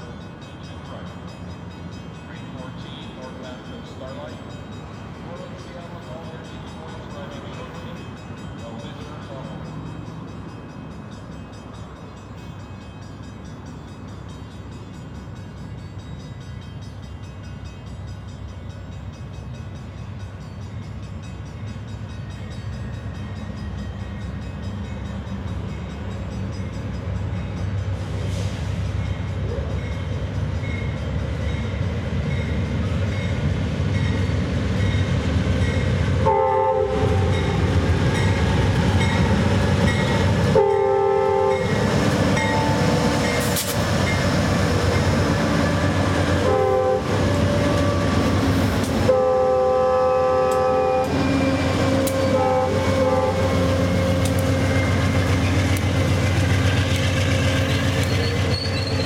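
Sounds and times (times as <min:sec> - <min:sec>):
diesel locomotive rumbling: 0:00.0 - 0:59.0
train horn blasts: 0:36.2 - 0:37.7, 0:39.1 - 0:43.6, 0:45.3 - 0:48.4, 0:49.0 - 0:55.2.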